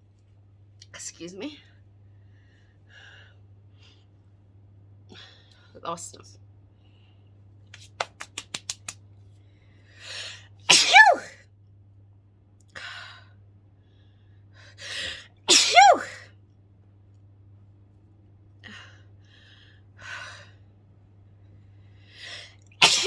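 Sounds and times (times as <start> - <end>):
woman sneezing: 10.7 - 11.4, 15.5 - 16.3, 22.8 - 23.0.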